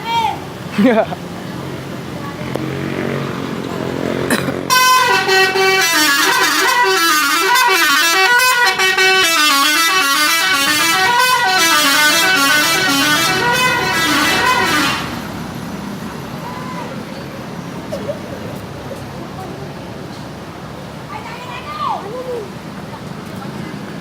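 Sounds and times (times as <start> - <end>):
musical air horn playing a tune: 4.7 - 15.3.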